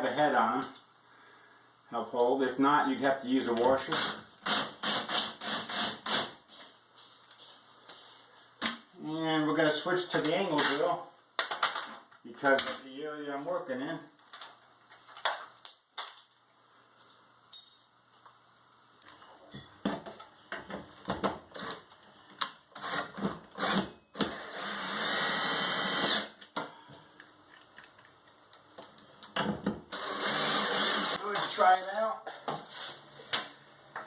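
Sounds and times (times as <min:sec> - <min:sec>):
cordless drill running: 0:22.8 - 0:26.4, 0:29.9 - 0:31.2.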